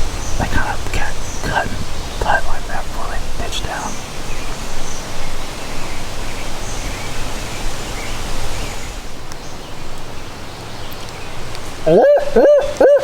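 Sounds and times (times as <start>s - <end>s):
strong wind on microphone: 0.0s - 9.3s.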